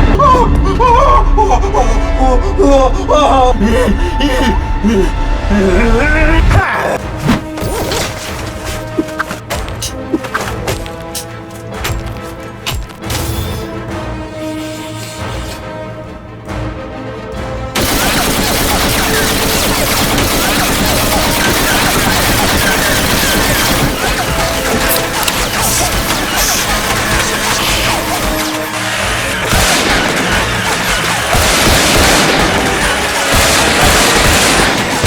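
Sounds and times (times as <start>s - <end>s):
background music: 0.0s - 35.0s
rapid gunfire: 17.8s - 35.0s
explosions: 29.4s - 35.0s.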